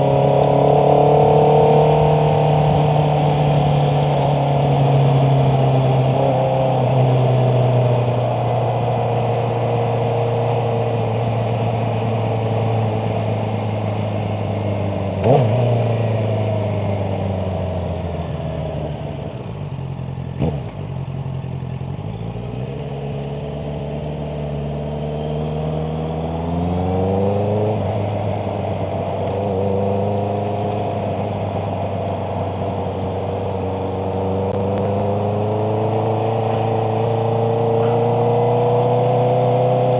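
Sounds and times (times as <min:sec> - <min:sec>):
motorcycle engine running: 0:30.4 - 0:39.9
sharp clicks: 0:34.5 - 0:35.1.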